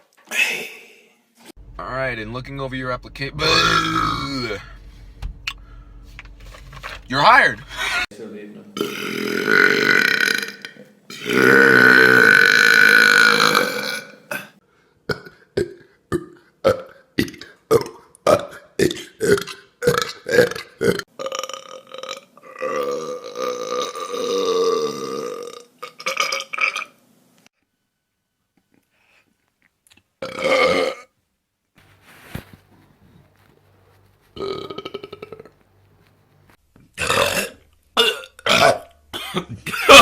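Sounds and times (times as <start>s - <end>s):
people belching: 3.4s - 4.6s, 8.8s - 14.5s, 17.7s - 26.4s, 37.0s - 38.9s.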